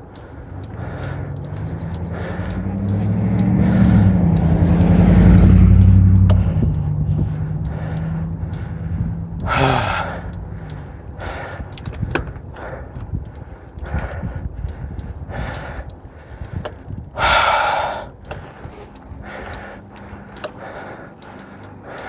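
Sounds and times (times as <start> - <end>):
passing car engine: 0.0 - 11.8
cyclist breathing heavily: 0.0 - 22.0
low rumble from riding: 0.0 - 22.0.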